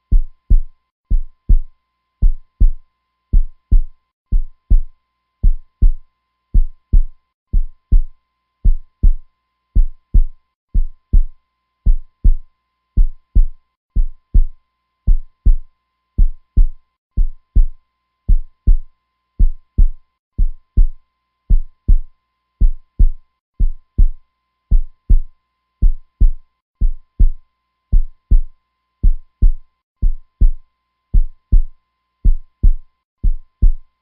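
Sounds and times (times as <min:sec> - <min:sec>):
heartbeat thumps: 0:00.0 - 0:06.0, 0:06.6 - 0:09.2, 0:09.8 - 0:12.4, 0:13.0 - 0:15.6, 0:16.2 - 0:30.6, 0:31.2 - 0:33.9.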